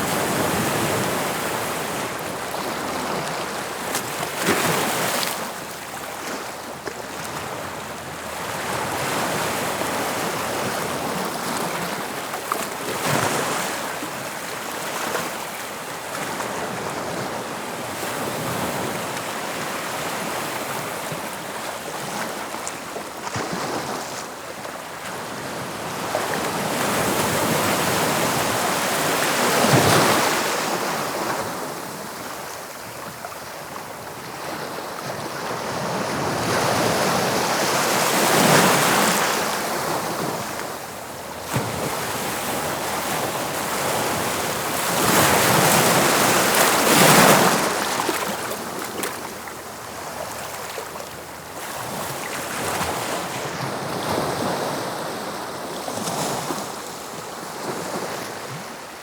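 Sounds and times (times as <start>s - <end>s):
sea waves breaking on shore: 0.0s - 58.8s.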